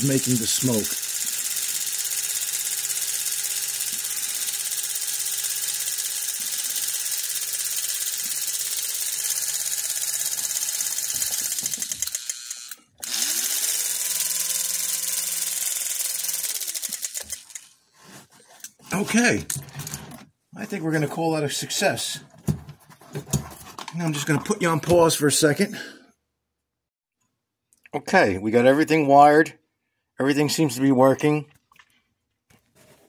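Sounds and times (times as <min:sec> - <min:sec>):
electric motor whirring: 0:00.1 - 0:17.6.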